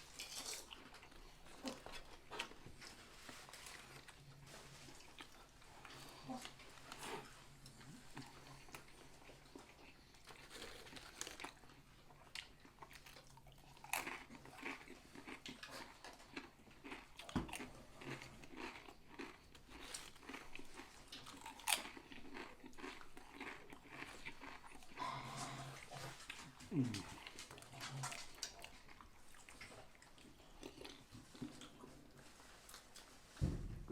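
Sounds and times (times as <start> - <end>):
chewing and biting food: 0.0 - 33.1
loud food crunches: 10.3 - 11.7, 12.4 - 25.0.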